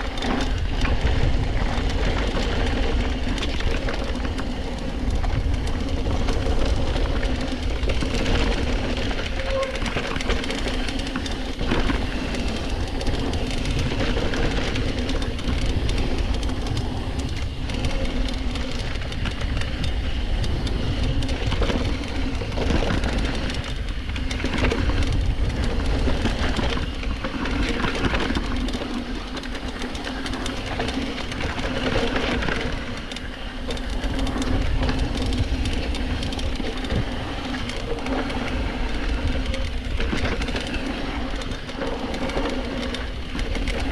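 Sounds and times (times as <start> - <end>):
bike rattling over bumps: 0.0 - 43.9
tires running over dirt and rocks: 0.0 - 43.9
wind buffeting camera: 0.0 - 43.9.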